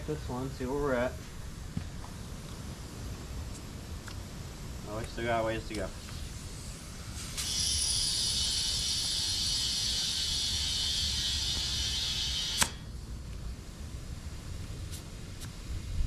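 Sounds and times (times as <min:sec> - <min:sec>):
air hose hissing into tire: 0:04.9 - 0:13.0, 0:14.7 - 0:15.9
air chuck click: 0:12.3 - 0:12.8.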